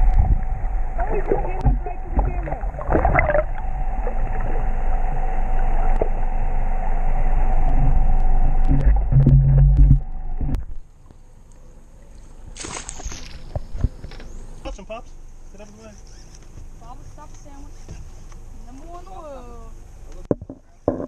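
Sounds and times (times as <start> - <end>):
boat engine rumbling: 0.0 - 11.0.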